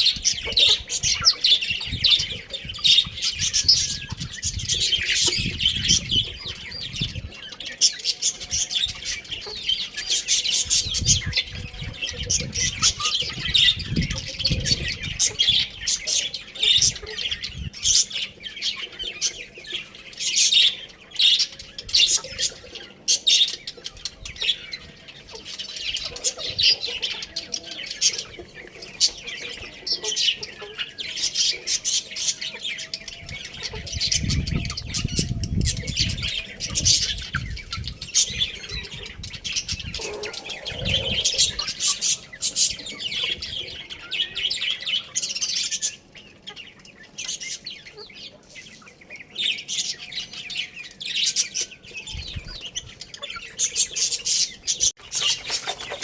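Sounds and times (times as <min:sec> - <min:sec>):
small birds chirping: 0:00.0 - 0:56.0
low rumbling: 0:39.8 - 0:42.0.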